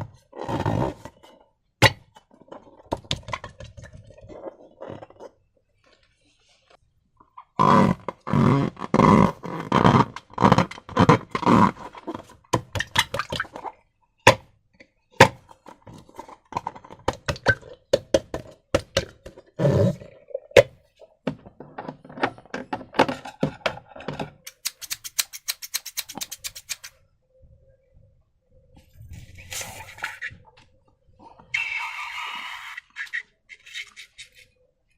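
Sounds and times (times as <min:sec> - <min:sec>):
sharp clicks: 0:24.5 - 0:27.0.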